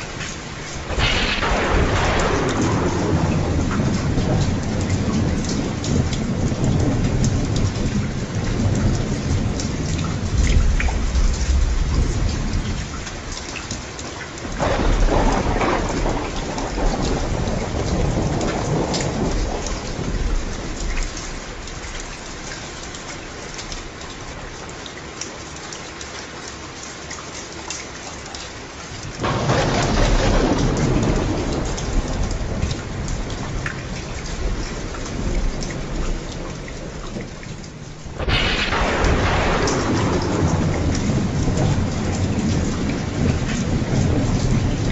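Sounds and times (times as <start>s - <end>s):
low thunder rumble: 0.0s - 13.2s, 14.4s - 22.5s, 29.2s - 44.9s
heavy rain: 0.0s - 44.9s
loud thunder peals: 0.7s - 9.6s, 14.5s - 20.8s, 29.2s - 44.9s.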